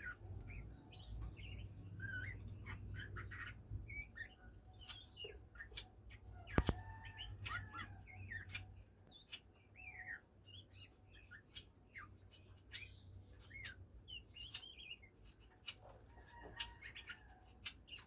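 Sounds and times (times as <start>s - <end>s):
bird chirping and whistling: 0.0s - 5.7s.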